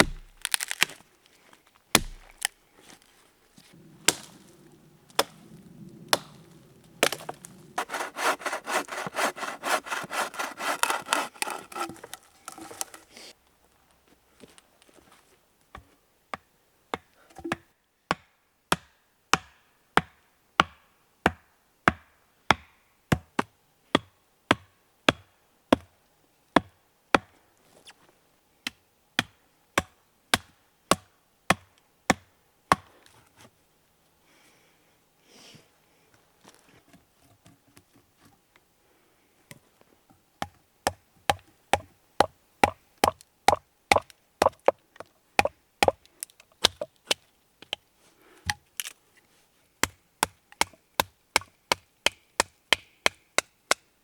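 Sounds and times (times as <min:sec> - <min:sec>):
chopping strikes on wood: 0:00.0 - 0:00.8, 0:01.9 - 0:02.5, 0:07.0 - 0:12.9, 0:16.9 - 0:25.2, 0:40.4 - 0:44.8, 0:45.4 - 0:46.0, 0:46.6 - 0:46.9, 0:48.4 - 0:48.6.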